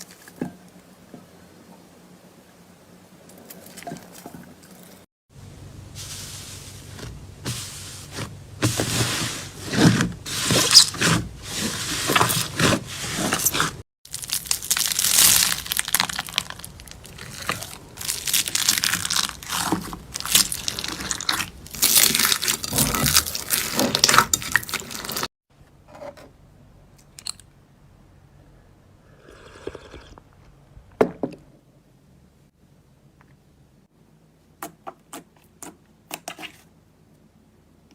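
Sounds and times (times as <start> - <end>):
slime crackling and popping: 14.1 - 25.2.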